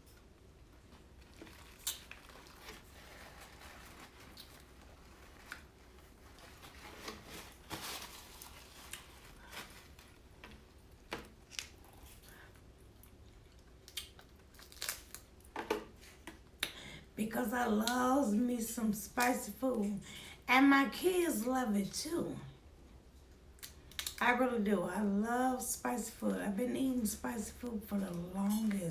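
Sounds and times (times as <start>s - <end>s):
squishy eating sound: 0.1s - 16.5s
wet chewing: 1.1s - 5.8s, 11.4s - 15.4s
lip smacks: 1.6s - 2.4s, 13.8s - 15.0s, 16.3s - 16.8s.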